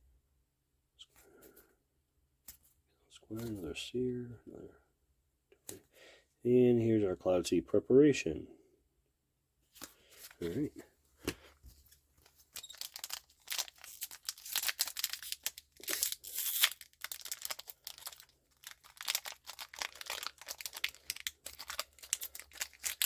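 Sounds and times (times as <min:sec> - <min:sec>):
card pack wrapper tearing and crinkling: 0:12.2 - 0:23.0.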